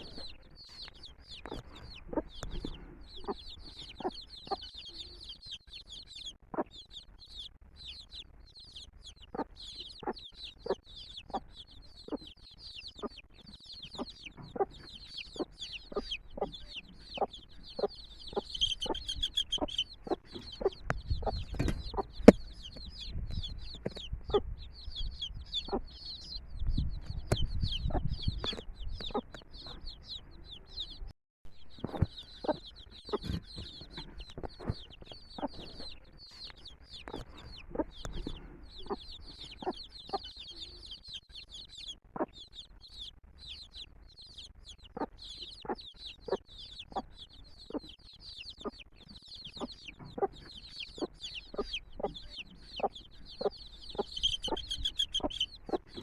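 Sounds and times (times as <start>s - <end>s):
chicks peeping: 0.0s - 56.0s
hen clucking: 0.0s - 56.0s.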